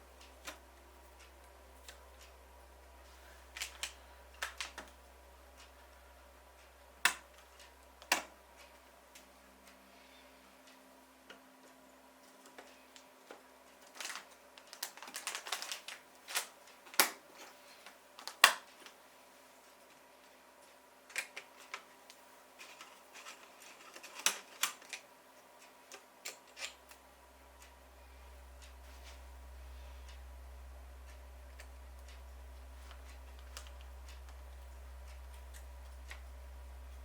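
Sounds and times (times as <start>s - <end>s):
computer parts clicking and clacking: 6.6s - 8.4s, 22.6s - 27.0s
low hum: 27.0s - 37.0s.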